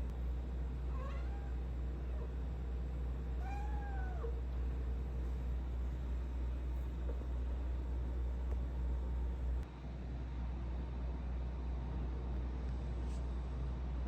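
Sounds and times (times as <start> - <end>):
steady low hum: 0.0 - 14.0
cat meowing: 0.9 - 1.6, 3.4 - 4.4.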